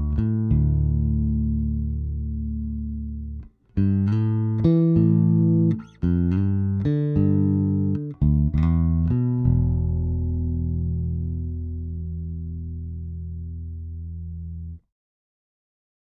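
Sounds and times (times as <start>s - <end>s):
electric bass plucked notes: 0.0s - 14.8s.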